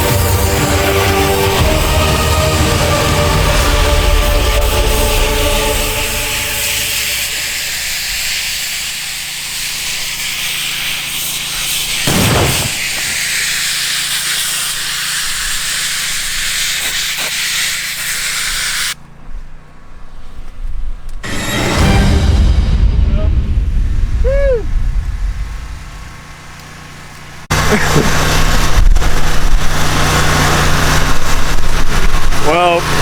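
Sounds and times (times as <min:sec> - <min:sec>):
low motor hum: 0:00.0 - 0:09.2, 0:19.0 - 0:33.0
pressure washer jet hissing: 0:00.0 - 0:19.0, 0:25.4 - 0:33.0.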